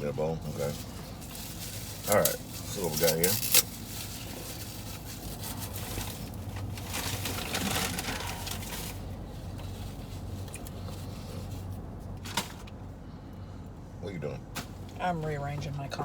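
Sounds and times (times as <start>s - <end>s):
steady low hum: 0.0s - 16.0s
food packaging rustling: 0.7s - 11.7s.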